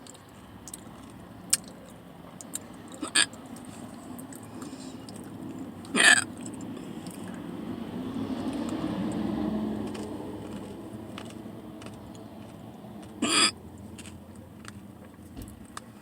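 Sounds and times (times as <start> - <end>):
woman hiccuping: 3.0 - 3.3, 6.0 - 6.3, 13.2 - 13.6.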